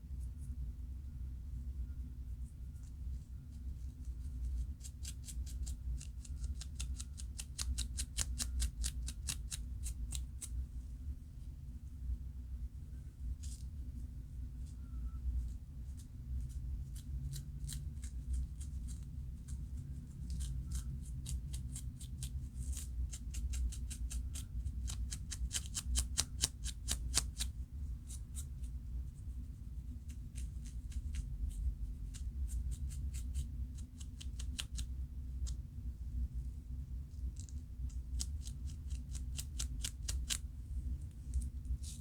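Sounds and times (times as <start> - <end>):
low steady hum: 0.0 - 42.0
scalp scratching: 3.9 - 10.5, 15.9 - 28.8, 37.3 - 42.0.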